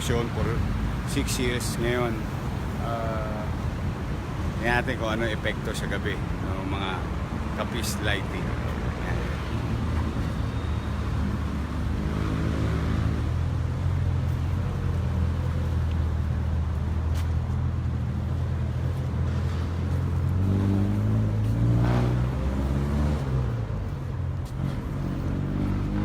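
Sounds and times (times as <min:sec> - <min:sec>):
traffic engine hum: 0:00.0 - 0:26.0
vehicle passing close: 0:07.6 - 0:14.2, 0:17.5 - 0:26.0.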